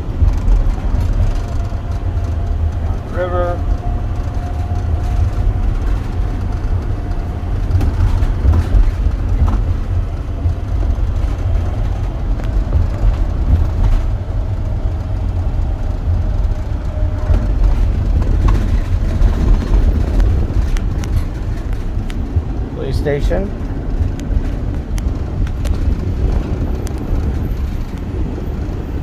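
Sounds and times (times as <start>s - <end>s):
moving vehicle rumble: 0.0s - 29.0s.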